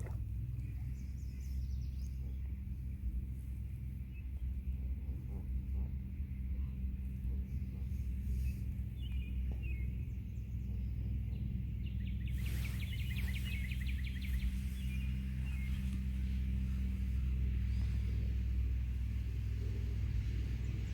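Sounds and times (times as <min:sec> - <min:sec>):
low outdoor rumble: 0:00.0 - 0:20.9
small bird chirping and trilling: 0:11.8 - 0:17.9.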